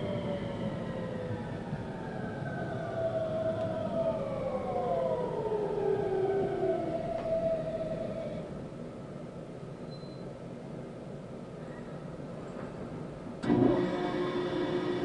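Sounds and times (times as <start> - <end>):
electric train motor whine: 13.4 - 15.0.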